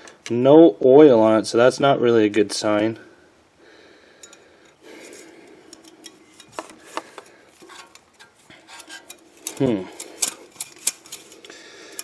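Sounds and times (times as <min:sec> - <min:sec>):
metal parts clinking: 0:07.6 - 0:12.0
short vocal sound: 0:09.6 - 0:10.0.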